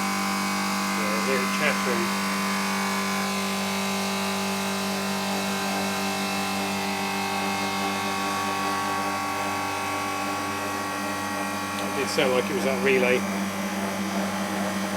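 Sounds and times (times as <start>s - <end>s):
compressor humming: 0.0s - 14.9s.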